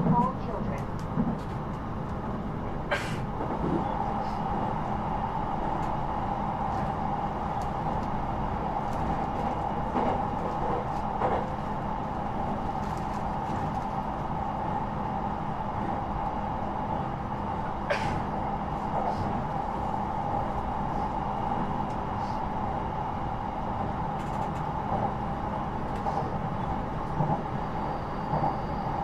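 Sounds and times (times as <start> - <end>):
train wheels rumbling on rails: 0.0 - 29.0.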